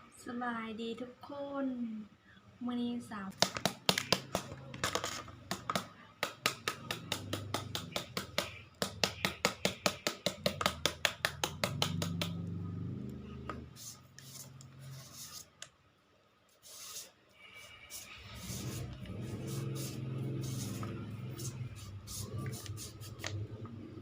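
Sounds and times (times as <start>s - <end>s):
pestle pounding in a mortar: 3.4s - 12.4s.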